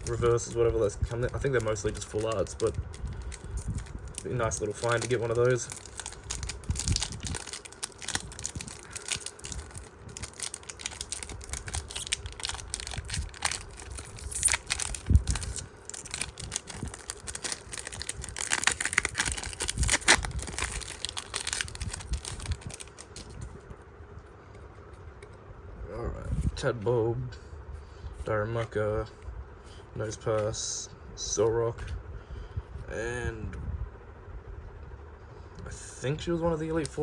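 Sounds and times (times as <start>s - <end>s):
foil wrapper crinkling and tearing: 0.0s - 23.6s
cards clicking and rustling: 0.2s - 2.7s, 4.2s - 6.6s.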